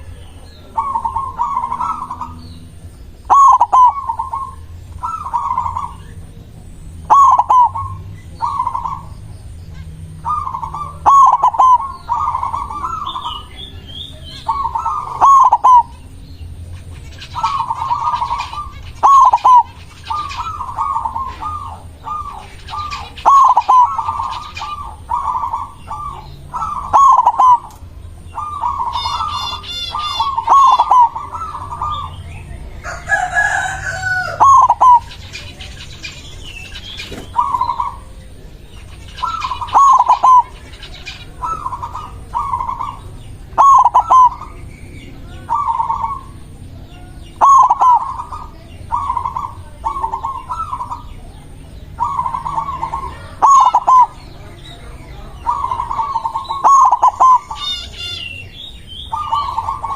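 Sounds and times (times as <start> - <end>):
dove cooing in trills: 0.0 - 59.9
rooster crowing: 28.8 - 32.0, 32.7 - 35.1.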